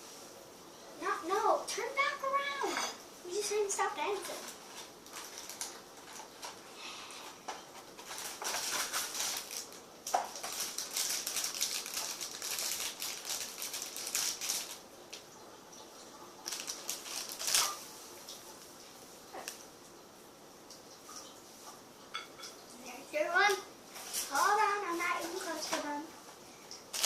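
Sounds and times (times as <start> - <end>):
snack packaging crinkling: 4.2 - 6.6, 7.8 - 14.9, 16.4 - 17.8.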